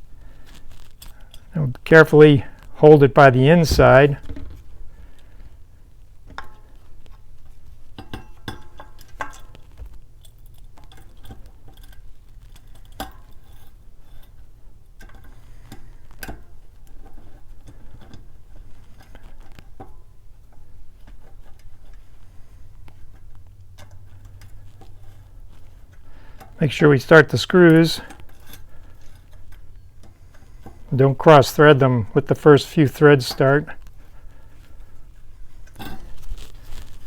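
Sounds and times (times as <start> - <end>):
low steady hum: 0.0 - 15.3.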